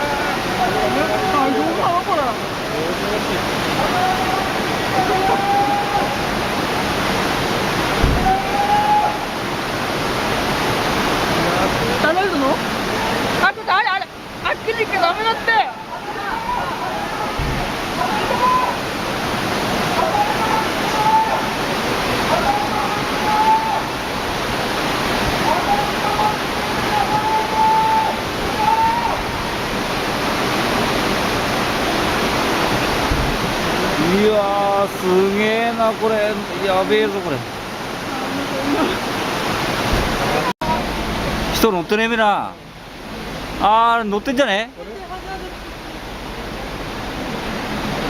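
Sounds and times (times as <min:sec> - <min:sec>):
floodwater rushing and churning: 0:00.0 - 0:48.0
low thump: 0:08.0 - 0:08.4, 0:17.4 - 0:17.7, 0:33.1 - 0:33.5, 0:39.9 - 0:40.2.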